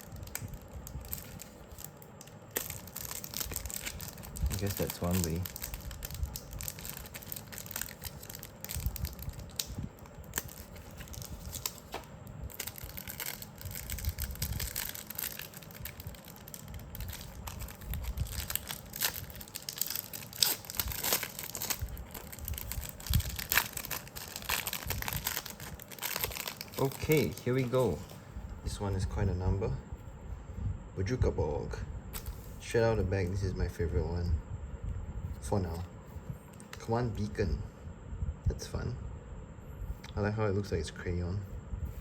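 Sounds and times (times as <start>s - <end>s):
card packaging tearing and crinkling: 0.0s - 28.0s.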